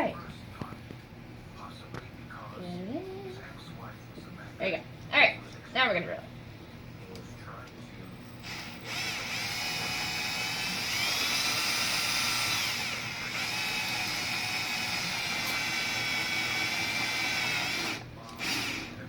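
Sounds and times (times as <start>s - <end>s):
electric drill whining: 8.4s - 19.0s.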